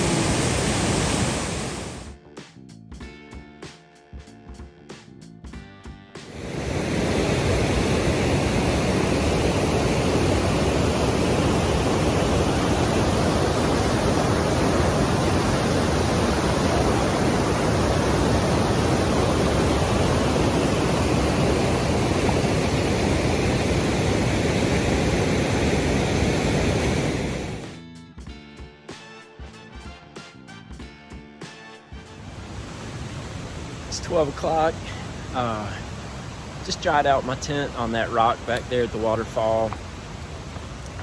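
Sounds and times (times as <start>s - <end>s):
waterfall roaring: 0.0s - 2.1s, 6.3s - 27.8s, 32.2s - 41.0s.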